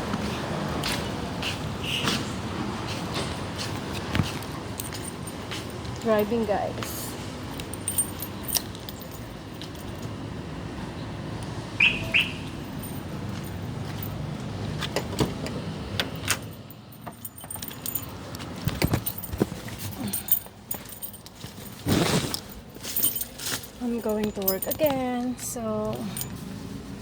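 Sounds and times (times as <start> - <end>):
keys jangling: 4.3 - 10.2, 12.5 - 14.3, 16.0 - 26.4.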